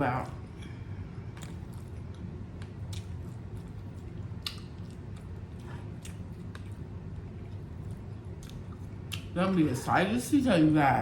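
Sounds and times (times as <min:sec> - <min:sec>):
low steady hum: 0:00.0 - 0:11.0
close-up chewing: 0:01.3 - 0:09.4.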